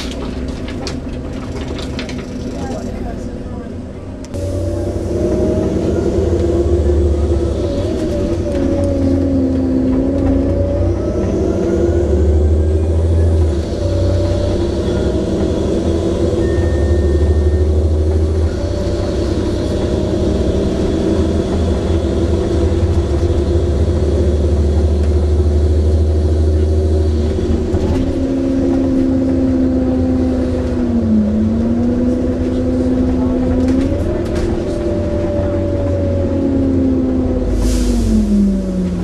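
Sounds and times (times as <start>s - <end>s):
bus engine and gearbox drone: 0.0s - 39.0s.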